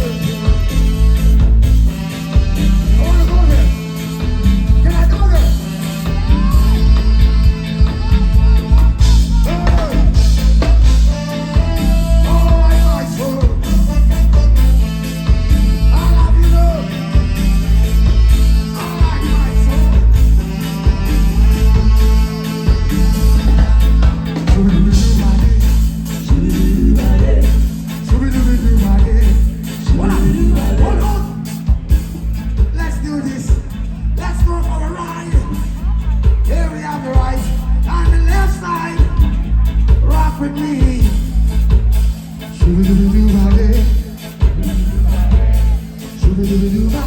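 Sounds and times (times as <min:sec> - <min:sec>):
heavy bass line: 0:00.0 - 0:47.0
live reggae band playing: 0:00.0 - 0:47.0
person singing: 0:05.1 - 0:31.7.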